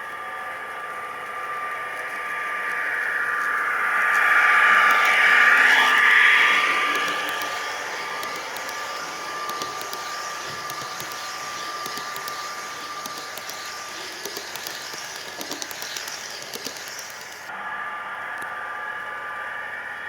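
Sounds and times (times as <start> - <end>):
model train running whir: 0.0 - 20.0
wheel clicks over track: 4.2 - 17.5.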